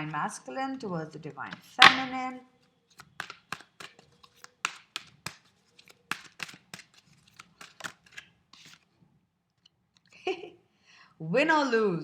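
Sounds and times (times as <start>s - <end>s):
cards being shuffled: 2.6s - 8.9s.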